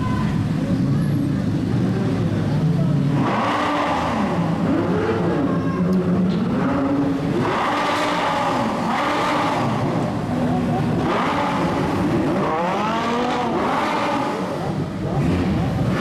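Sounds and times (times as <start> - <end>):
car engines revving in a tunnel: 0.0 - 16.0.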